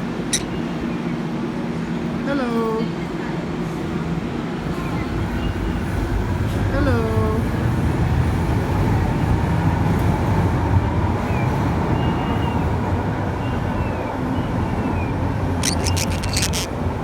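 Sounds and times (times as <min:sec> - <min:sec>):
low rumbling background noise: 0:00.0 - 0:17.0
parrot chick chirps: 0:15.6 - 0:16.7
sharp clicks: 0:15.6 - 0:16.7.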